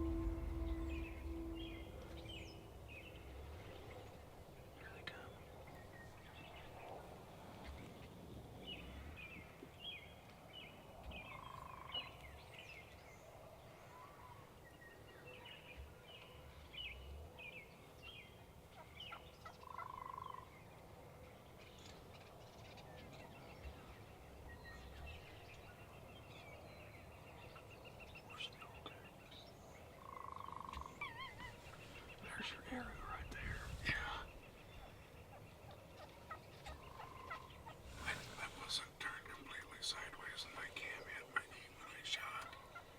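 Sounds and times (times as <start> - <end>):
turkeys gobbling: 36.0 - 38.9.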